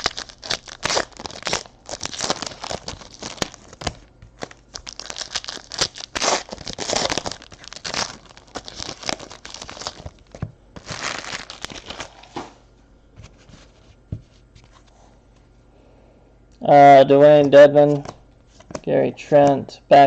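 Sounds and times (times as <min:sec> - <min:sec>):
card pack wrappers tearing: 0:00.0 - 0:12.4.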